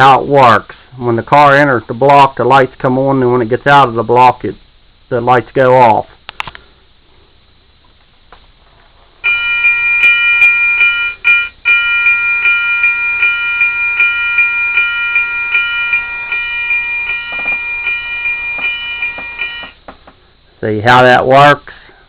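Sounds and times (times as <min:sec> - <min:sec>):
railroad crossing bell ringing: 0:09.2 - 0:19.8.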